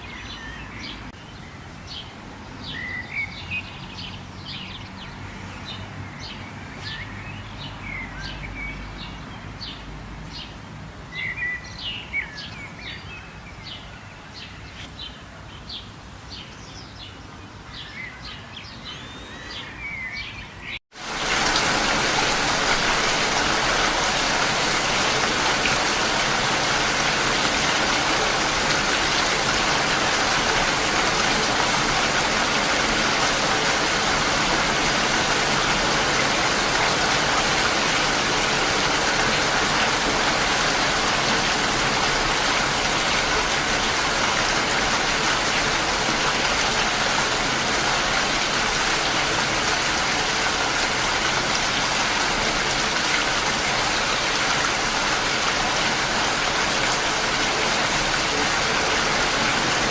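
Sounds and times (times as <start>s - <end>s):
loud rain: 20.9s - 59.9s.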